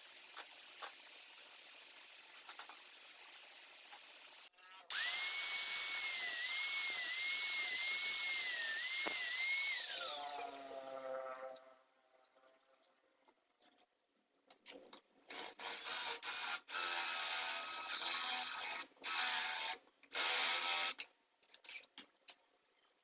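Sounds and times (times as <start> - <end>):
circular saw winding down: 4.9 - 11.6.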